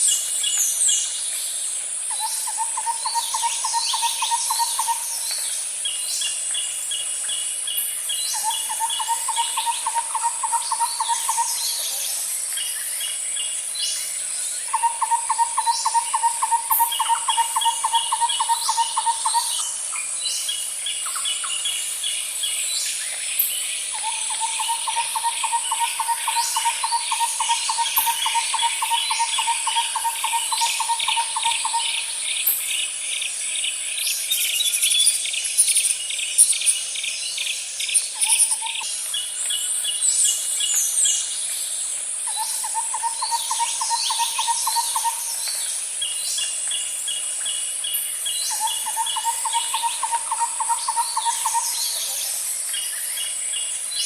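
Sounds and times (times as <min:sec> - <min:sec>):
high-pitched insect drone: 0:00.0 - 0:54.0
bird chirps: 0:22.4 - 0:41.3, 0:42.3 - 0:47.6, 0:48.2 - 0:53.7.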